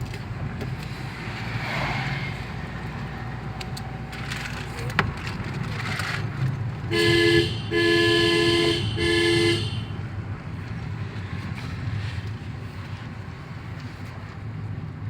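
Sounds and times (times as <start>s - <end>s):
vehicle engine and road rumble: 0.0s - 15.0s
two-tone vehicle horn honking: 6.9s - 10.1s.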